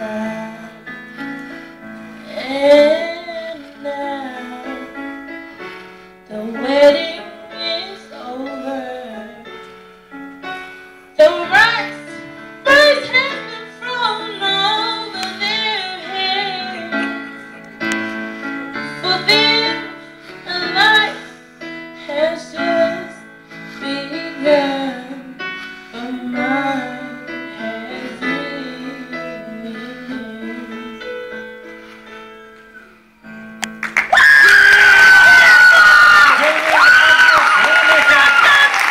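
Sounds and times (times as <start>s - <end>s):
piano accompaniment: 0.0s - 38.9s
girl singing: 2.3s - 4.9s, 6.3s - 9.5s, 11.2s - 17.2s, 18.9s - 21.3s
audience cheering and applause: 33.8s - 38.9s.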